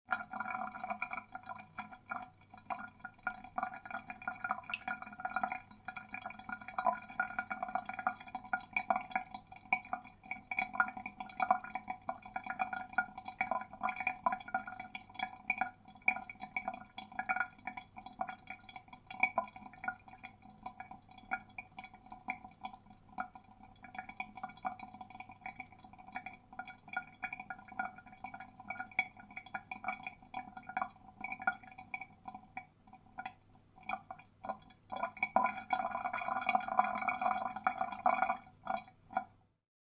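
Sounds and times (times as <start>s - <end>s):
water gurgling down a drain: 0.1s - 39.4s.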